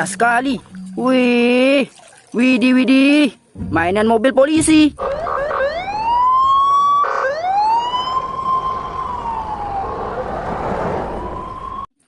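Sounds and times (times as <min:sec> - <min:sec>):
police siren wailing: 0:05.0 - 0:11.9.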